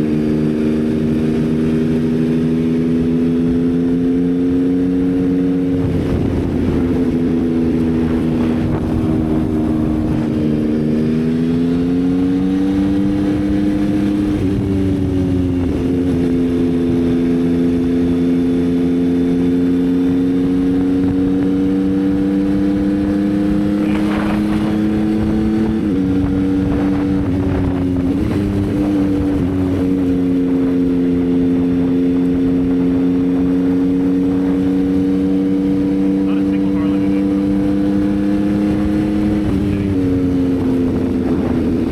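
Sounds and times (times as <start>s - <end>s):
motorcycle engine cruising: 0.0s - 41.9s.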